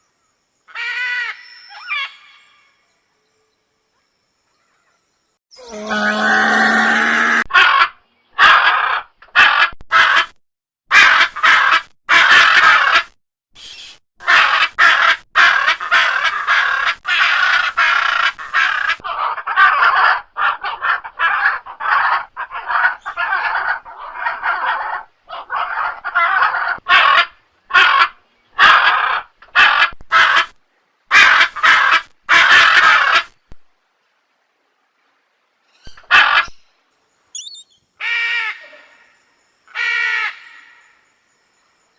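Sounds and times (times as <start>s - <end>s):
macaws squawking: 14.2s - 30.5s, 35.9s - 36.6s, 37.4s - 38.6s.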